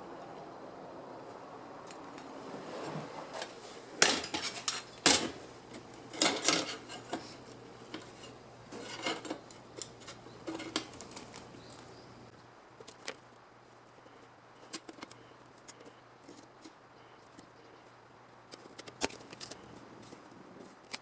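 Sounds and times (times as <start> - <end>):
metal tools clinking and clattering: 3.4 - 11.9.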